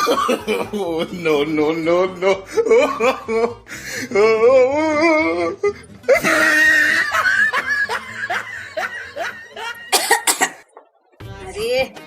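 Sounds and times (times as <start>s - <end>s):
person laughing hard: 6.1s - 9.4s.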